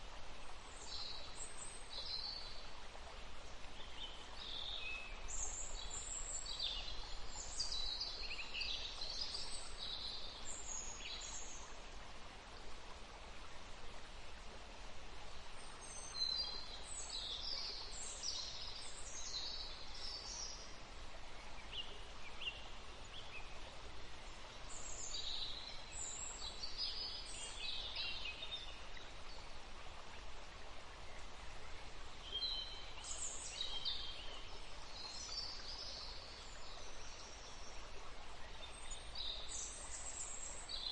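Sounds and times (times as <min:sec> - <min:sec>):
steady background hiss: 0:00.0 - 0:40.9
songbirds singing: 0:31.0 - 0:40.9.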